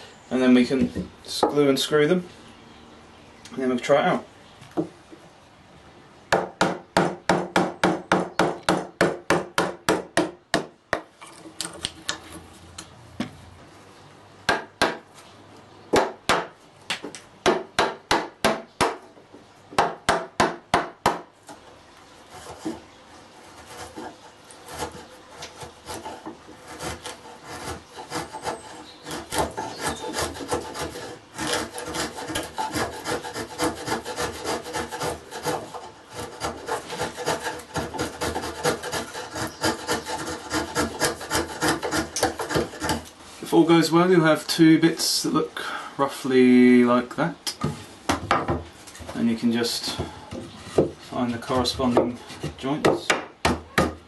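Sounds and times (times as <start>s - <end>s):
hand tool cutting wood: 23.4s - 43.2s.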